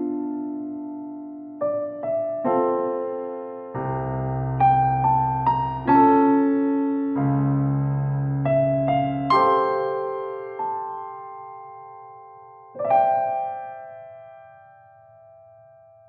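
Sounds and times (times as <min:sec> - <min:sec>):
slow electric piano piece: 0:00.0 - 0:16.0.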